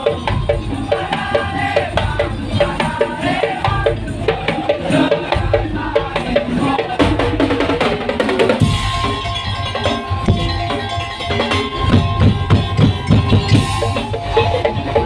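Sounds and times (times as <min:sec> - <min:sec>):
slit drums and drums beating: 0:00.0 - 0:15.0
pitched instrument melody: 0:08.6 - 0:15.0.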